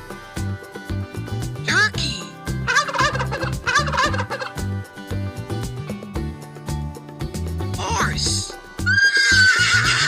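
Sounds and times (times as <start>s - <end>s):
cheerful music with steady beat: 0.0s - 10.0s.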